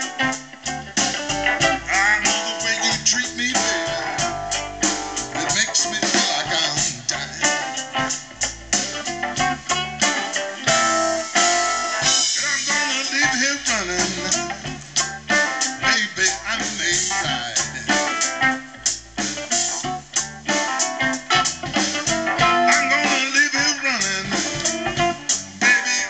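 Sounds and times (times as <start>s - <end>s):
bass and drums: 0.0s - 26.0s.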